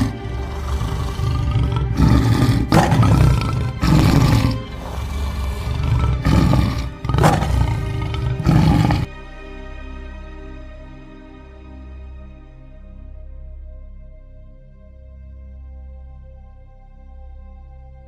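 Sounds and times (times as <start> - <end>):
big cat roaring: 0.0 - 9.1
background music: 0.0 - 18.0.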